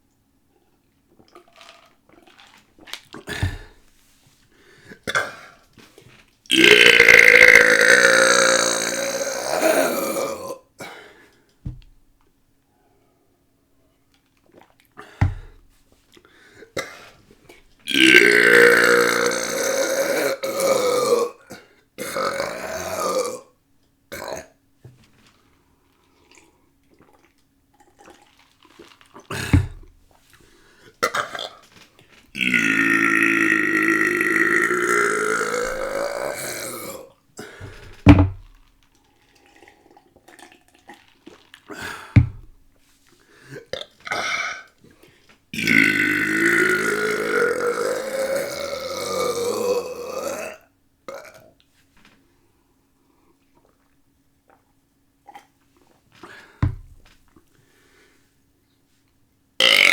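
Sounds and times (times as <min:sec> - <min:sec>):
long belches: 0:03.2 - 0:03.8, 0:06.5 - 0:10.7, 0:15.2 - 0:15.6, 0:17.9 - 0:24.6, 0:29.2 - 0:30.0, 0:31.0 - 0:31.7, 0:32.3 - 0:38.6, 0:41.7 - 0:42.6, 0:45.6 - 0:51.5, 0:56.6 - 0:57.0, 0:59.6 - 0:59.9
sharp burps or gulps: 0:03.2 - 0:03.8, 0:05.0 - 0:05.6, 0:06.5 - 0:11.0, 0:14.5 - 0:15.6, 0:17.9 - 0:24.6, 0:29.2 - 0:30.0, 0:31.0 - 0:31.7, 0:32.4 - 0:38.6, 0:39.5 - 0:42.6, 0:43.6 - 0:44.8, 0:45.6 - 0:51.6, 0:56.6 - 0:57.0, 0:59.6 - 0:59.9.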